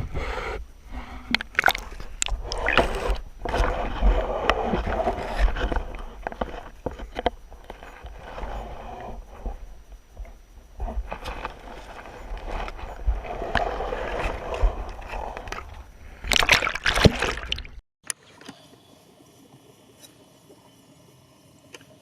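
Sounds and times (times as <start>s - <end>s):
water sloshing and splashing: 1.3s - 9.6s, 10.9s - 18.6s.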